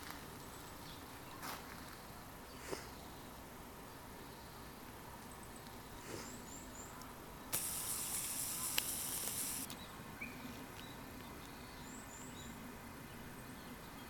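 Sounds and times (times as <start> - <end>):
sharp hiss: 7.5 - 9.7
single click: 7.5 - 9.8.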